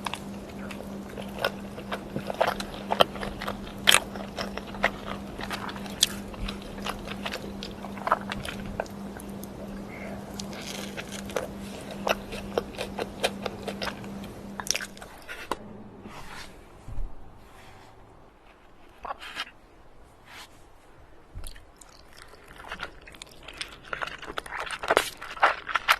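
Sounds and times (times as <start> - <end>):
crunchy chewing: 0.0 - 15.6, 21.4 - 25.9
steady low hum: 0.0 - 25.9.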